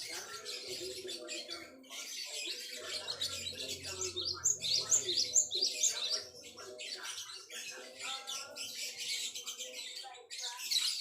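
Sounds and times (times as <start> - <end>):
bird chirping: 0.0 - 11.0.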